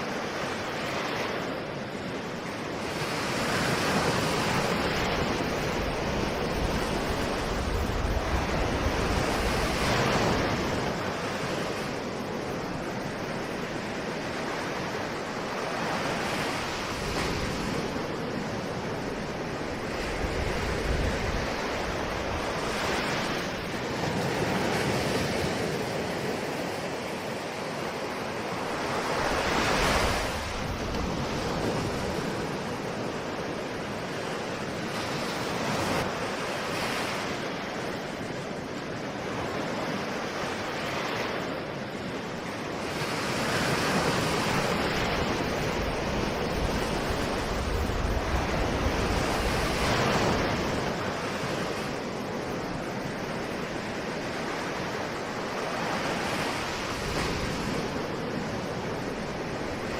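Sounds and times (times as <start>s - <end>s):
ocean waves breaking: 0.0s - 59.9s.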